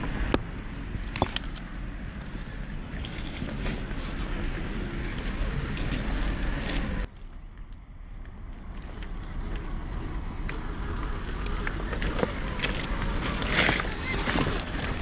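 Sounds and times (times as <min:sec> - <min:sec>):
tyres crunching over rocks: 0:00.0 - 0:15.0
electric motor running: 0:10.3 - 0:15.0.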